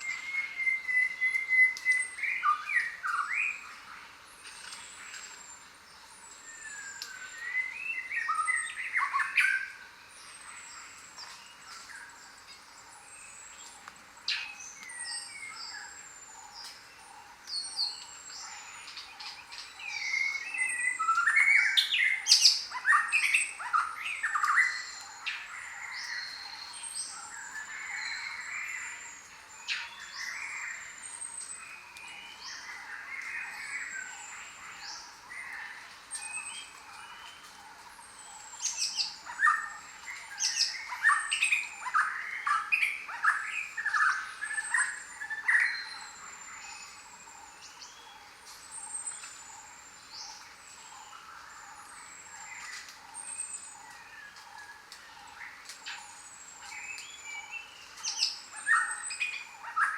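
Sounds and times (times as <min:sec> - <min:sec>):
birds squawking and chattering: 0:32.4 - 0:59.9.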